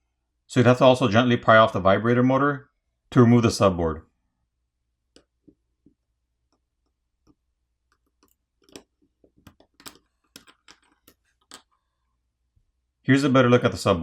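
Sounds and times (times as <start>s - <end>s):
small tools clicking on phone parts: 7.9s - 11.8s.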